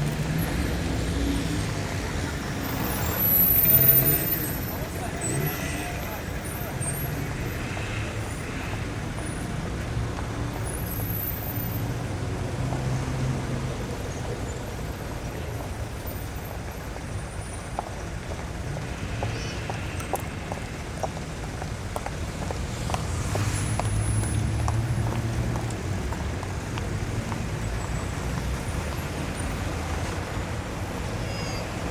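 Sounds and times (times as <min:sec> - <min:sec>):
passing cars: 0:00.0 - 0:31.9.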